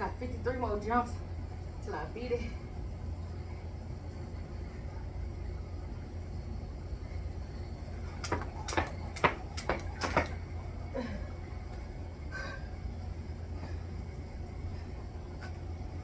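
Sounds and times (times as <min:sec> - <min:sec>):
steady low rumble: 0:00.0 - 0:16.0
jump rope slapping the ground: 0:08.0 - 0:10.6.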